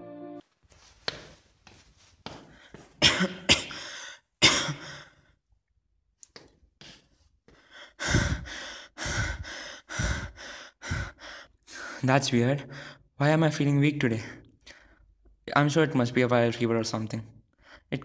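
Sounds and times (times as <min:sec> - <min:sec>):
person coughing: 0:03.0 - 0:05.1.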